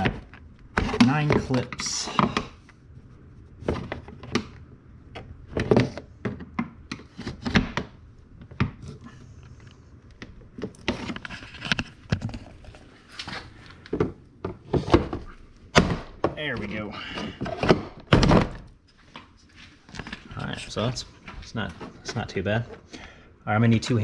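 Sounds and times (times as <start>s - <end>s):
plastic scraping: 5.2s - 15.5s.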